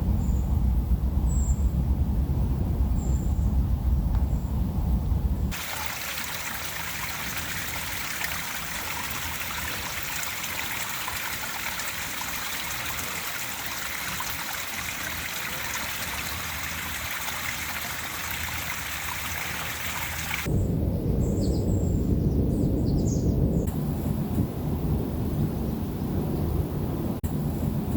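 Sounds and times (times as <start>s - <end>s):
stream water running: 5.5s - 20.5s.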